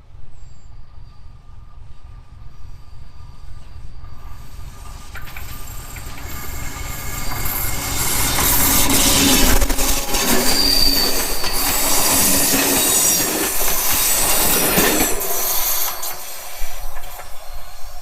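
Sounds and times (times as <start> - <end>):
train rolling past: 0.0 - 18.0
train wheels squealing: 0.0 - 18.0
wheels clicking over rail joints: 4.9 - 18.0.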